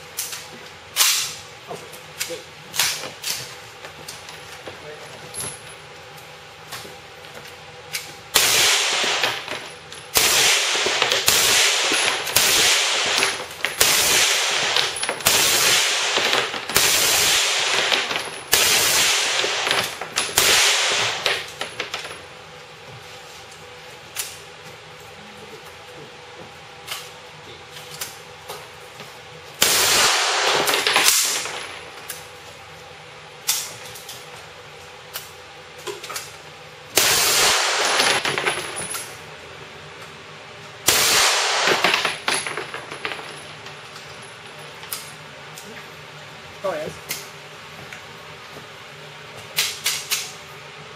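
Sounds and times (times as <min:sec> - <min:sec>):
automatic gunfire bursts: 0:10.2 - 0:19.8, 0:20.4 - 0:21.2, 0:29.6 - 0:31.4, 0:37.0 - 0:38.2, 0:40.9 - 0:42.0.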